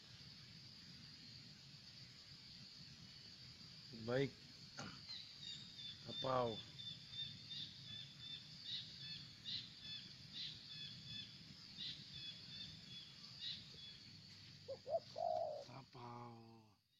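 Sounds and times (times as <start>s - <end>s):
birds chirping: 4.0s - 16.7s
lower bird calls: 4.8s - 16.6s.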